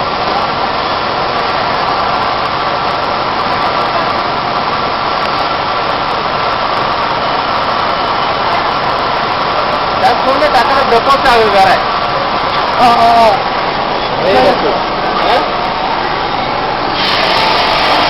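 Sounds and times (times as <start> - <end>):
industrial vacuum cleaner running: 17.0 - 18.0.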